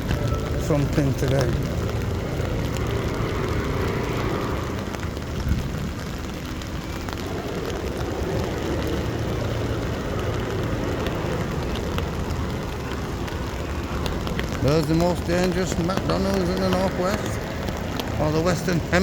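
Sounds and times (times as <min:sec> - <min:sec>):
low traffic rumble: 0:00.0 - 0:19.0.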